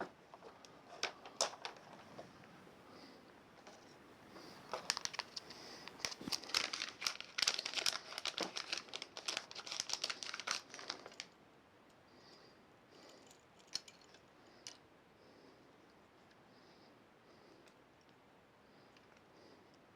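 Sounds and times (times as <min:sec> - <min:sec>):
small clicks and crackles: 0:00.0 - 0:02.6, 0:03.6 - 0:12.0, 0:13.0 - 0:14.8
crinkling and rustling: 0:00.0 - 0:11.4.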